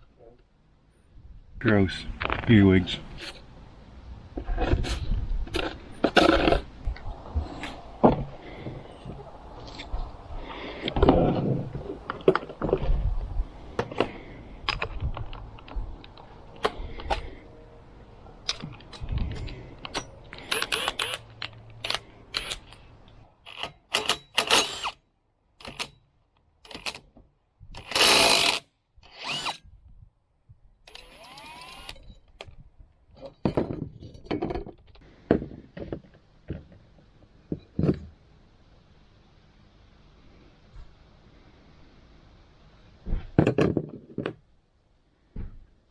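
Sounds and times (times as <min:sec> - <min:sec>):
metal parts and tools clanking: 0:04.5 - 0:06.7, 0:18.4 - 0:25.0, 0:27.8 - 0:28.6, 0:33.1 - 0:34.9.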